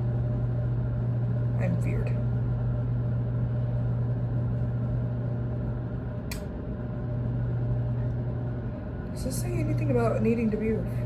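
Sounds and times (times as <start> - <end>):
microwave oven humming: 0.0 - 11.0
sharp click: 6.3 - 6.5.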